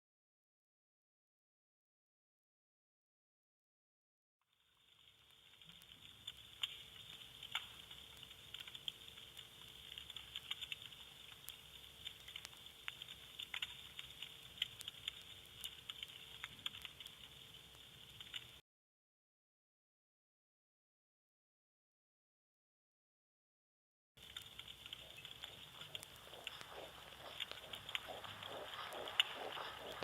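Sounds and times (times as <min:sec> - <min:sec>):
vinyl crackles and pops: 0:04.5 - 0:18.6, 0:24.2 - 0:30.0
faint steady hum: 0:04.6 - 0:18.6, 0:24.2 - 0:30.0
vinyl record hiss: 0:24.2 - 0:30.0.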